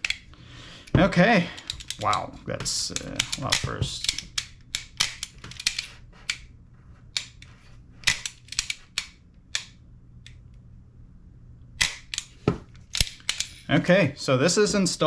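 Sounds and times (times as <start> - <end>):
metal parts clicking: 0.0 - 0.3, 1.5 - 6.4, 7.1 - 10.4, 11.8 - 13.7.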